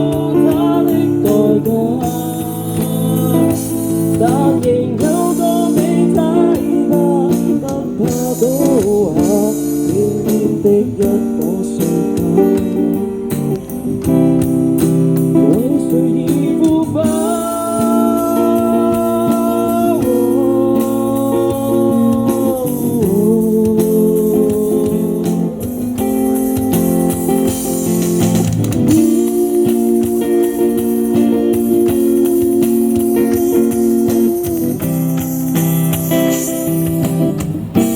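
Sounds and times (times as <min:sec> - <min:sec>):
person singing: 0:00.0 - 0:13.0, 0:15.4 - 0:25.7, 0:28.8 - 0:35.6
guitar accompaniment: 0:00.0 - 0:37.9.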